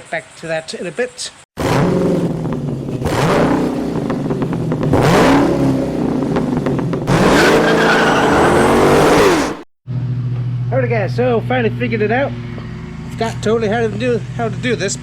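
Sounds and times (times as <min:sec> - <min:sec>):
engine revving: 0:01.6 - 0:15.0.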